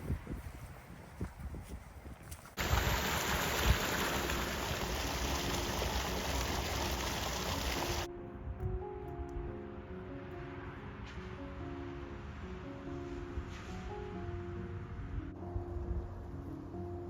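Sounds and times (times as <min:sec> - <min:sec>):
running water rushing: 0:02.6 - 0:08.1.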